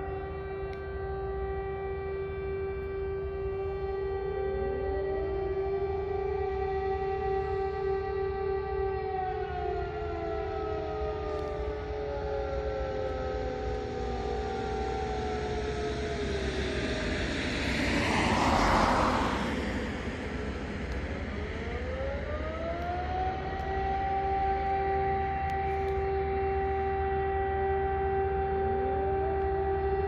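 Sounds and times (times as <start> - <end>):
sirens wailing: 0.0 - 30.0
rush of noise: 12.7 - 29.8.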